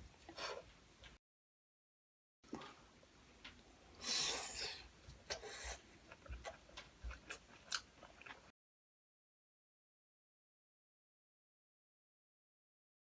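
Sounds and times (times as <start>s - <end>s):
person chewing: 4.0s - 8.5s.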